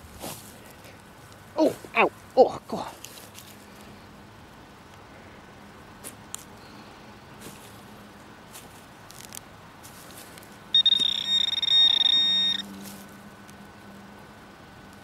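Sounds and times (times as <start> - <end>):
digging scrapes and ticks: 8.6 - 13.6
metal detector alert tone: 10.7 - 12.8.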